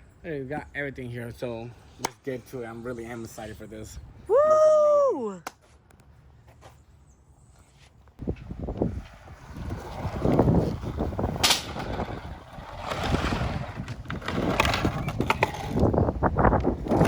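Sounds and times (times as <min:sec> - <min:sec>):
skateboard wheels rolling on concrete: 0:00.3 - 0:17.0.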